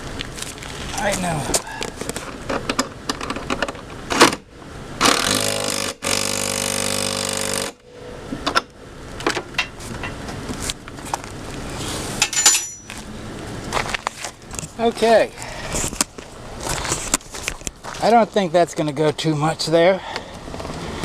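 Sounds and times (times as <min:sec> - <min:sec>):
metal parts clicking and knocking: 0:12.2 - 0:13.0.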